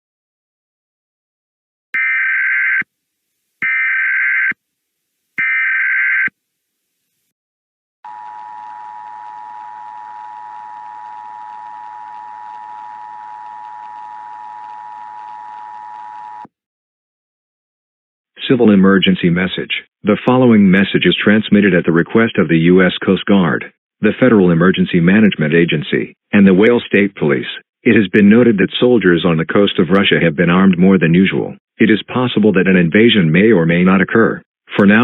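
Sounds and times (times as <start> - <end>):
steady dual tone: 8.0 - 16.5.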